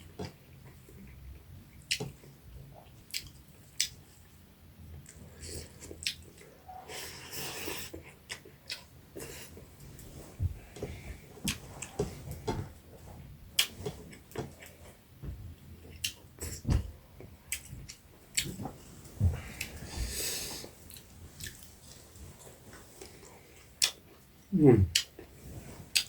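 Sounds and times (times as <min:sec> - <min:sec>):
chewing crisp food: 0:02.8 - 0:06.6, 0:07.5 - 0:09.6, 0:17.5 - 0:18.7, 0:20.8 - 0:22.0, 0:23.0 - 0:25.3
soft thuds: 0:10.2 - 0:12.8, 0:18.5 - 0:20.2.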